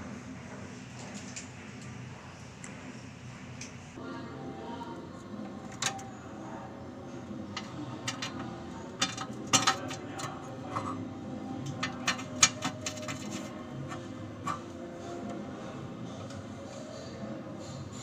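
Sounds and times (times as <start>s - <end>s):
low steady hum: 3.6s - 18.0s.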